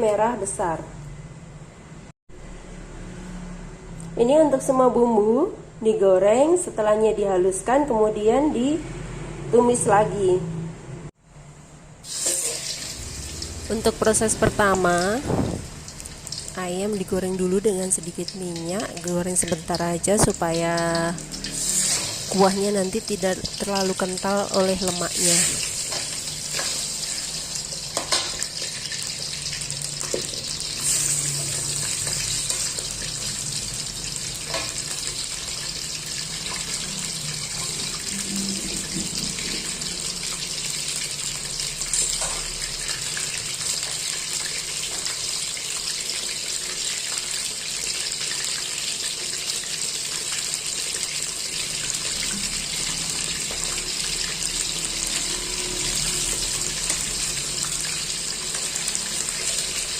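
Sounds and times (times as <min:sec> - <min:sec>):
chicken sizzling in oil: 0:12.0 - 0:59.9.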